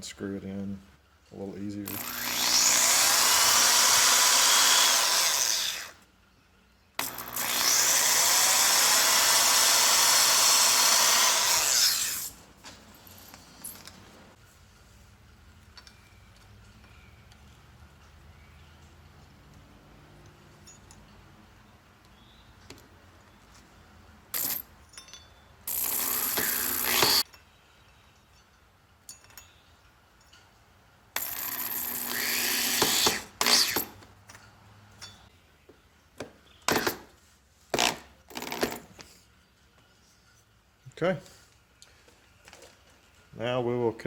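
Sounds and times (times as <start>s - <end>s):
power drill running: 1.9s - 6.0s, 7.0s - 12.3s, 25.7s - 27.2s, 31.2s - 33.8s.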